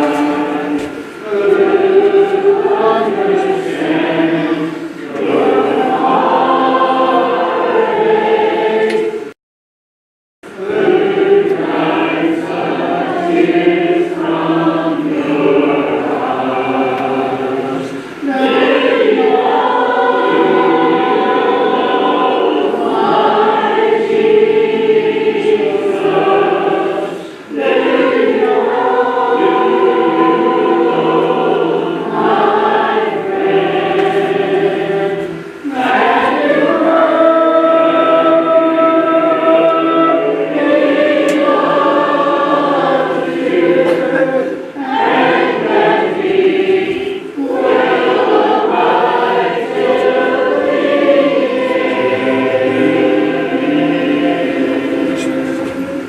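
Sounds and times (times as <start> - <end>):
congregation singing a hymn: 0.0 - 9.4, 10.5 - 56.0
singers breathing: 17.9 - 18.2, 27.2 - 27.5.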